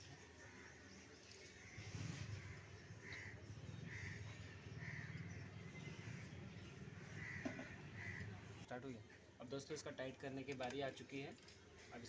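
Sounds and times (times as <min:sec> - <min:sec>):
crow cawing: 0:02.4 - 0:05.4, 0:07.0 - 0:08.4.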